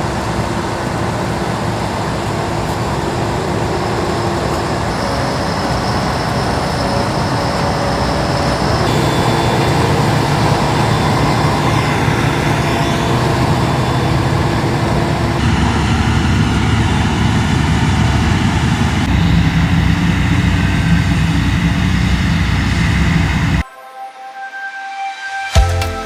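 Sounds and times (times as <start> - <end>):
diesel engines running: 0.0 - 23.6
machinery rattling: 2.5 - 21.9.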